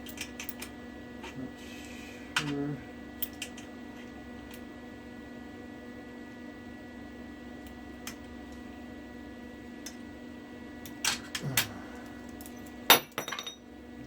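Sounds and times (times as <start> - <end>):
metallic clang with ring: 12.9 - 13.6.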